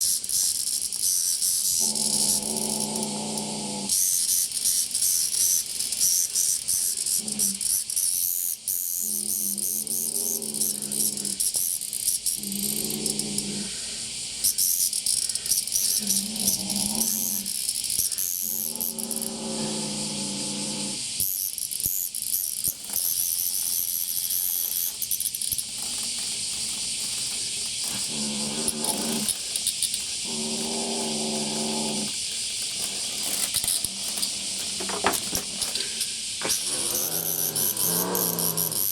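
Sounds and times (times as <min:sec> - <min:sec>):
cicadas buzzing: 0:00.0 - 0:38.9
cat growling: 0:01.8 - 0:04.0, 0:12.4 - 0:13.8, 0:16.0 - 0:17.5, 0:18.4 - 0:21.0, 0:25.8 - 0:38.9.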